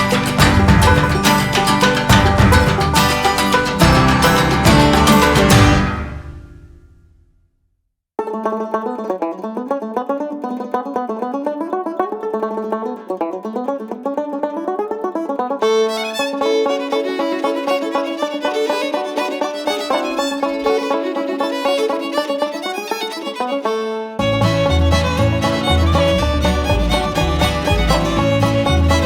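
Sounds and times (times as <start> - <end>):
bass: 0.0 - 6.2, 24.2 - 29.0
fiddle tune: 0.0 - 6.4, 14.5 - 29.0
banjo: 0.0 - 6.8, 8.2 - 29.0.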